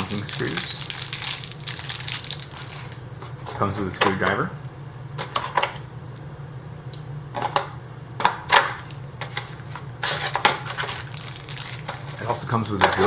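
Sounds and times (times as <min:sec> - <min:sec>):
plastic packaging rustling: 0:00.0 - 0:04.4, 0:08.5 - 0:13.0
steady low hum: 0:00.0 - 0:13.0.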